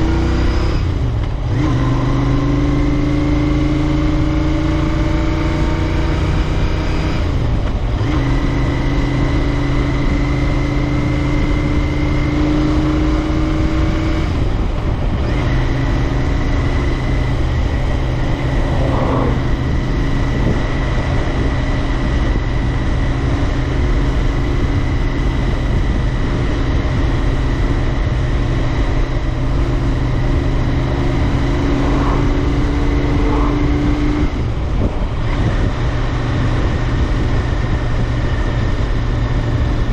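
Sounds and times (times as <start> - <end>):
motorcycle engine accelerating: 0.0 - 39.9
wind rumble: 5.0 - 39.9.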